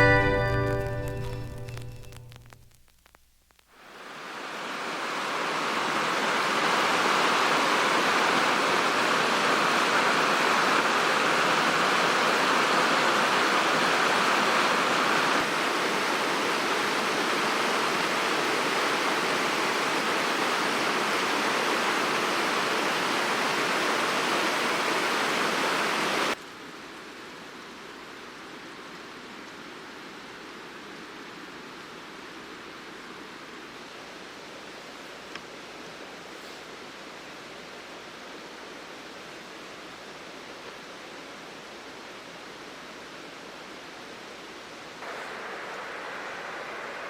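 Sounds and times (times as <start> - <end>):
rushing flowing water: 3.9 - 26.4, 36.8 - 47.0.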